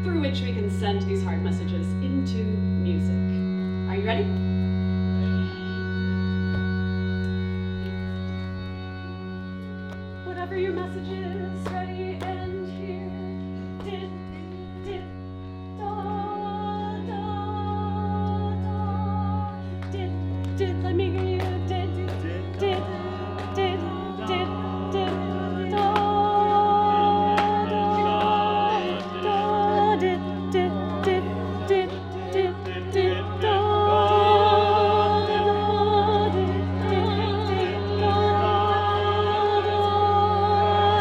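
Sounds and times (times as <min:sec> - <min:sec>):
low organ-like drone: 0:00.0 - 0:41.0
voices singing and humming: 0:10.3 - 0:15.2, 0:15.8 - 0:41.0.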